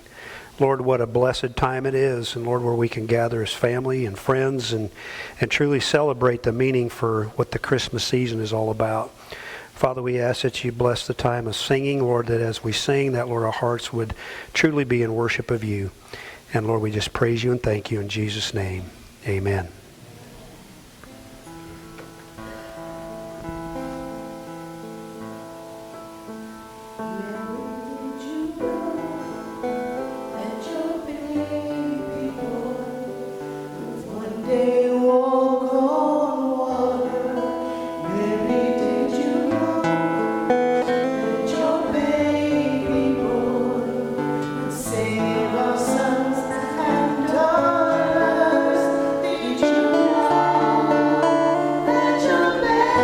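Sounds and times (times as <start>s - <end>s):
band playing worship music: 21.4s - 53.0s
voices singing: 27.0s - 53.0s.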